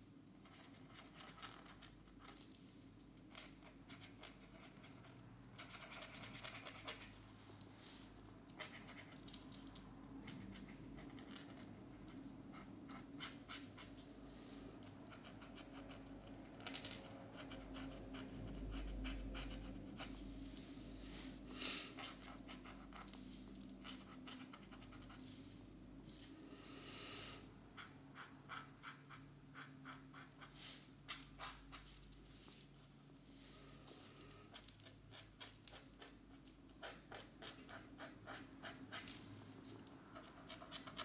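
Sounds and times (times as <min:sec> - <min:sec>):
markers scratching on paper: 0:03.2 - 0:07.2, 0:08.5 - 0:14.1, 0:14.9 - 0:20.9, 0:21.9 - 0:25.6, 0:27.8 - 0:32.0, 0:34.0 - 0:41.0.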